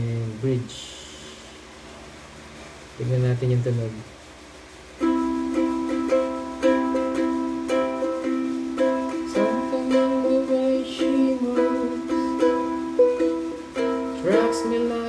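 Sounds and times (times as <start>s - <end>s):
ukulele strummed and picked: 5.0s - 15.0s.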